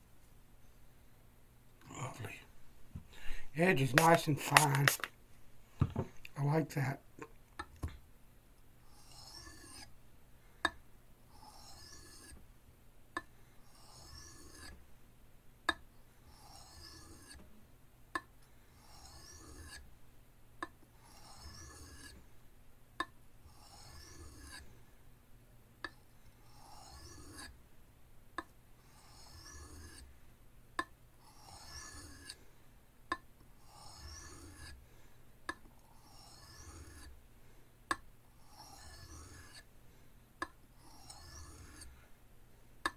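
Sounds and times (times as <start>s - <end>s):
knife scraping on sharpening stone: 8.9s - 9.9s, 11.4s - 12.4s, 13.8s - 14.8s, 16.3s - 17.4s, 18.8s - 19.8s, 21.0s - 22.2s, 23.5s - 24.6s, 26.5s - 27.5s, 29.0s - 30.1s, 31.2s - 32.4s, 33.7s - 34.8s, 36.0s - 37.2s, 38.5s - 39.7s, 40.8s - 41.9s.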